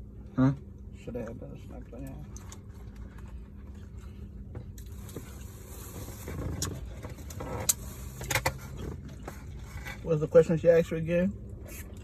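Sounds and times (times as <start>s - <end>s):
car cabin hum: 2.4s - 12.0s.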